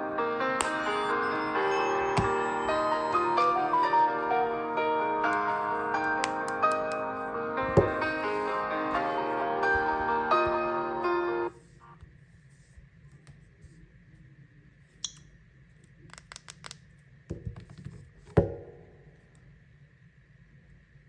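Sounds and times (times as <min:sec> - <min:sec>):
melodic phone ringtone: 0:00.0 - 0:07.2, 0:07.8 - 0:11.5.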